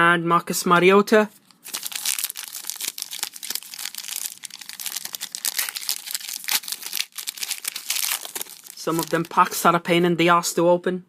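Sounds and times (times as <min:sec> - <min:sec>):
wrapper crinkling and tearing: 0:01.4 - 0:09.5.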